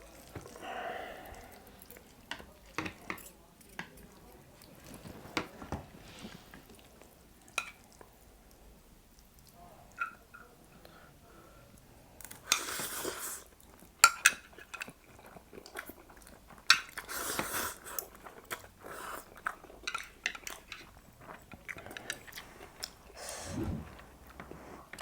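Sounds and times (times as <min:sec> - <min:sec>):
chewing noodles: 0:00.0 - 0:03.3, 0:06.5 - 0:09.6, 0:12.2 - 0:25.0
cutlery clicking against bowl: 0:02.3 - 0:04.2
hissing slurps: 0:22.7 - 0:24.8.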